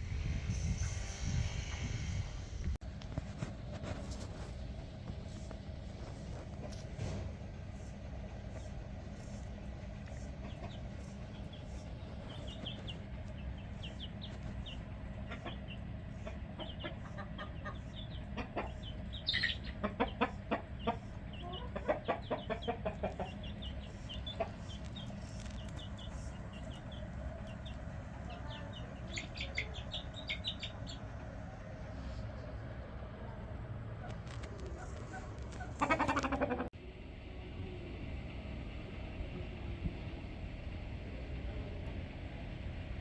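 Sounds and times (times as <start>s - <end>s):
steady low rumble: 0.0s - 43.0s
chickens clucking: 6.1s - 32.5s, 33.9s - 36.7s
chicken cackling: 15.0s - 31.0s, 33.9s - 36.7s.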